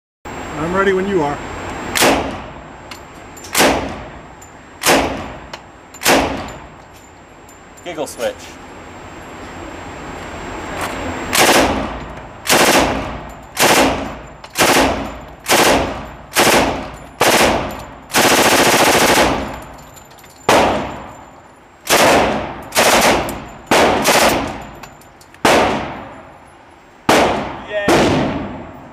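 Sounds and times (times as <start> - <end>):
submachine gun firing bursts: 11.4 - 19.6, 21.9 - 24.5
gunfire echo: 11.4 - 19.7, 20.5 - 21.1, 21.9 - 24.6, 25.4 - 26.2, 27.1 - 28.8.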